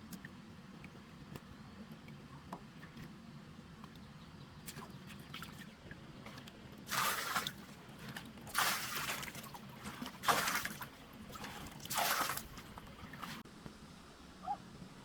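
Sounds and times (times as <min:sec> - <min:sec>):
water splashing strokes: 0:06.3 - 0:13.4.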